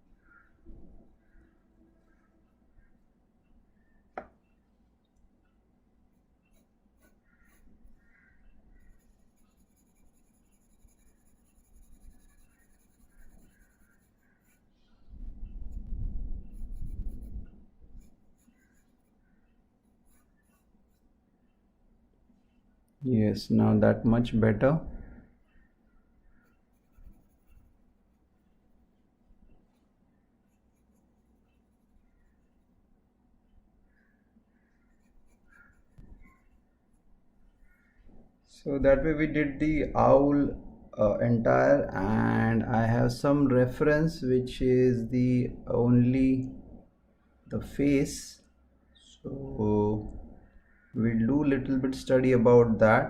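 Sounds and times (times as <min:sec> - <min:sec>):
pencil scratching on paper: 0:06.1 - 0:07.7, 0:08.8 - 0:14.7, 0:16.4 - 0:21.1, 0:26.2 - 0:28.6, 0:30.5 - 0:32.6, 0:34.8 - 0:36.6
low steady hum: 0:07.8 - 0:53.0.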